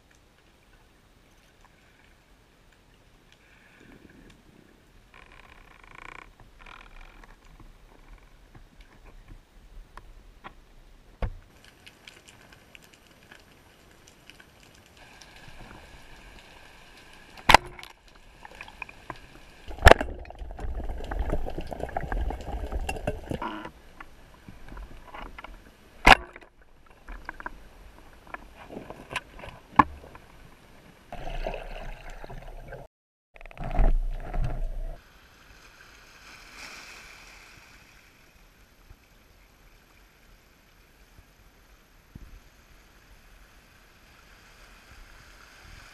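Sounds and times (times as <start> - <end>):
rushing bubbles: 19.6 - 23.4, 31.1 - 32.9
water gurgling underwater: 19.7 - 23.6, 31.2 - 32.9.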